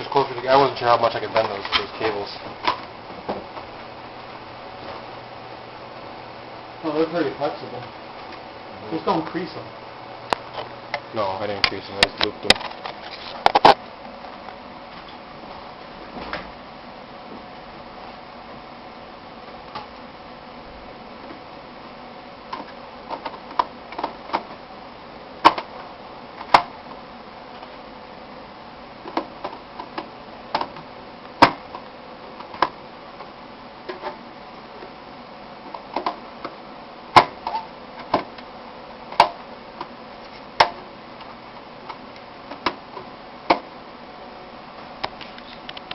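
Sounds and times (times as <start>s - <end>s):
faint steady hum: 0.0s - 45.9s.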